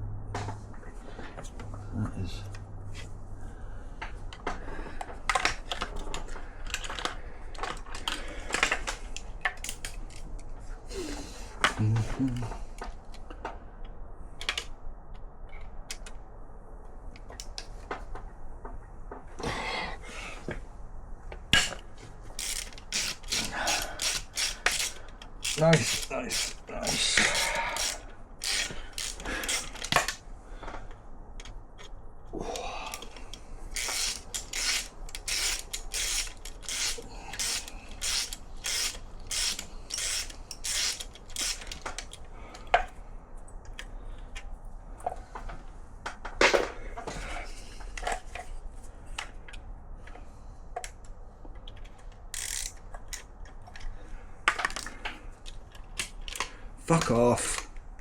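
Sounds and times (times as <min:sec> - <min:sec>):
ratchet wrench clicking: 0:21.6 - 0:30.2, 0:32.9 - 0:42.2, 0:52.3 - 0:53.3.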